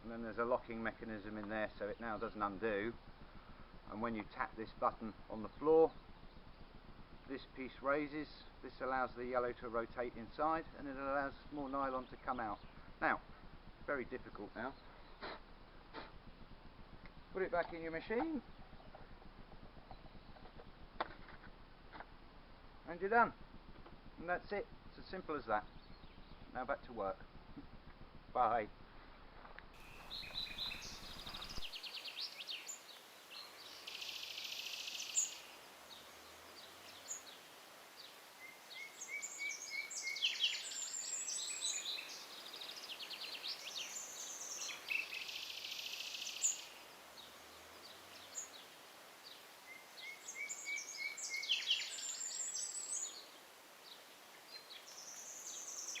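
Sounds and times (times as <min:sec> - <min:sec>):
songbirds chirping and trilling: 0:00.0 - 0:21.1, 0:21.8 - 0:28.8, 0:29.8 - 0:56.0
faint steady hiss: 0:00.0 - 0:56.0.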